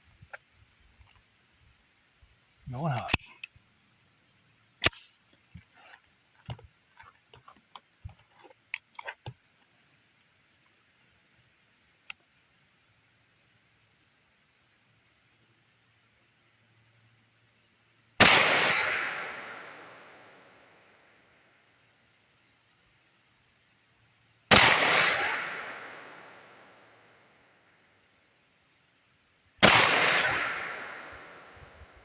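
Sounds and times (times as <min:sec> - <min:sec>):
high cricket buzz: 0:00.0 - 0:32.0
sharp click: 0:03.0 - 0:03.5, 0:04.8 - 0:05.2
pistol shot: 0:04.8 - 0:05.1, 0:18.2 - 0:20.2, 0:24.5 - 0:26.6, 0:29.6 - 0:31.8.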